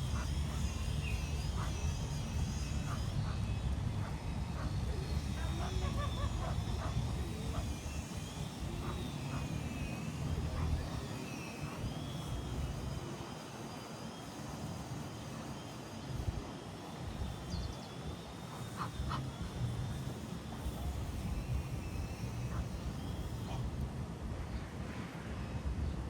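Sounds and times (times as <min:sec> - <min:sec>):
distant city traffic rumble: 0:00.0 - 0:13.2, 0:14.1 - 0:26.0.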